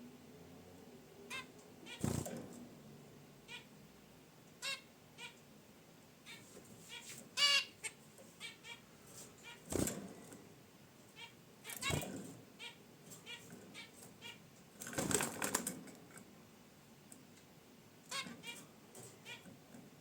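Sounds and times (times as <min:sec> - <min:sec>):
finches honking calls: 0:01.3 - 0:02.2, 0:03.4 - 0:03.7, 0:04.6 - 0:05.4, 0:06.2 - 0:09.7, 0:11.1 - 0:12.0, 0:12.6 - 0:14.4, 0:18.1 - 0:19.5.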